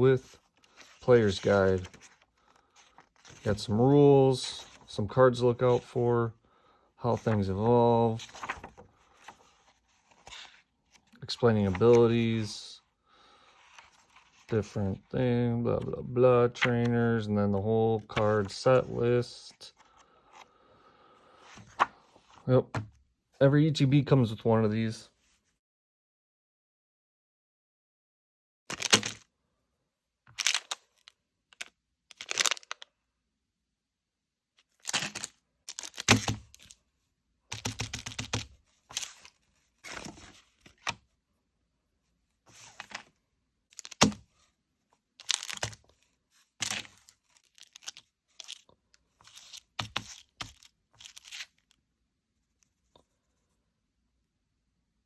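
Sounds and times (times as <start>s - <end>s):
packaging being torn open: 28.7s - 29.2s, 32.1s - 32.8s.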